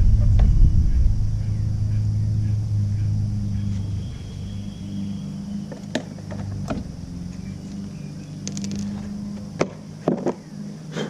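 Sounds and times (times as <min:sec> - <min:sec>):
low hum: 0:00.0 - 0:11.0
ratchet clicks: 0:08.4 - 0:09.0.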